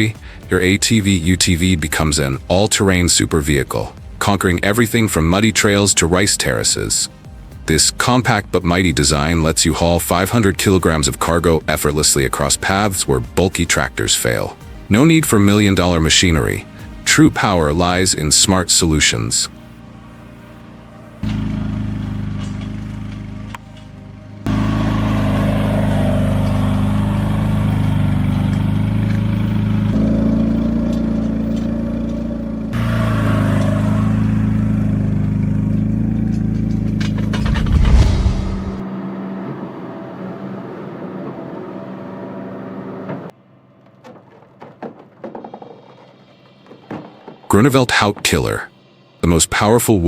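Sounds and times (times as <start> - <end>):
engine running steadily: 0.0 - 43.3
knocks and clatter: 36.3 - 38.8, 43.8 - 47.5.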